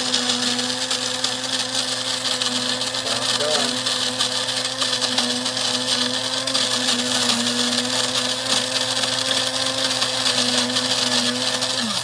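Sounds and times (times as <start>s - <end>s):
coffee grinder grinding beans: 0.0s - 12.0s.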